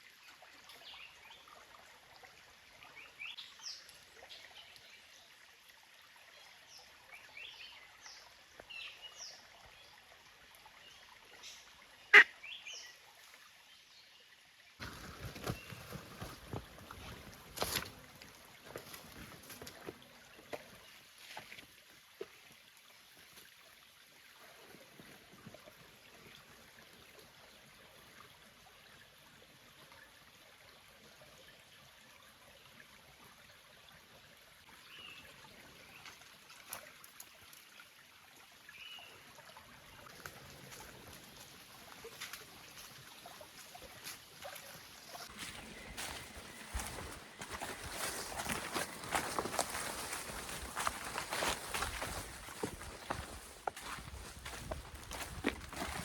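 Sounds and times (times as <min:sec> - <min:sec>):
faint forest background: 0:00.0 - 0:56.0
footsteps crunching on forest floor: 0:14.8 - 0:21.7, 0:40.7 - 0:56.0.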